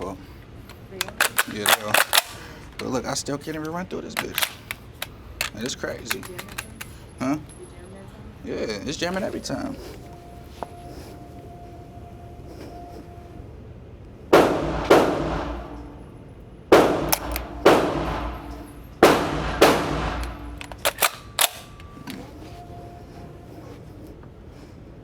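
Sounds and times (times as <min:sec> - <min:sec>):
sharp clicks: 0:03.6 - 0:07.0, 0:16.8 - 0:22.2
gunshots with echo: 0:14.3 - 0:21.8.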